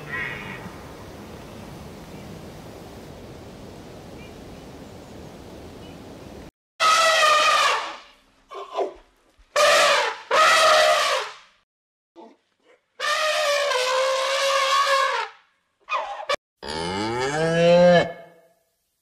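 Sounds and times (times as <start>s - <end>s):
cattle mooing: 16.6s - 18.3s.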